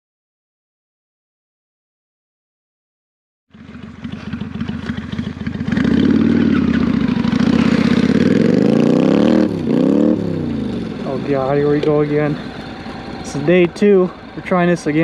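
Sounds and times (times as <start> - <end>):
motorcycle engine idling and revving: 3.5 - 15.0.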